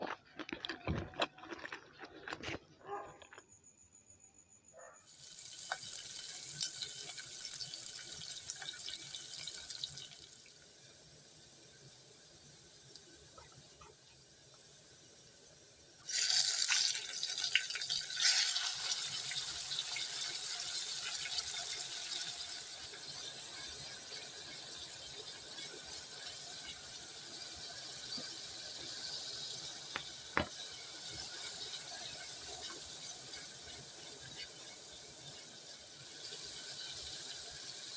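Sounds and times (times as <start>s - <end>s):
tap water running into sink: 5.2s - 10.4s, 29.9s - 33.8s.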